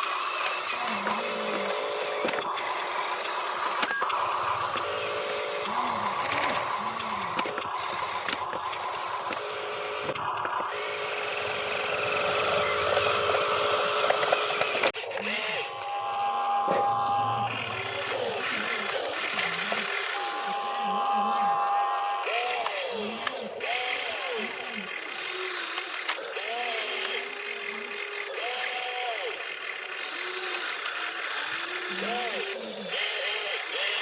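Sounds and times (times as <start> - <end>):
toy electric motors whirring: 0.0 - 34.0
voices: 0.8 - 2.4, 16.7 - 23.4.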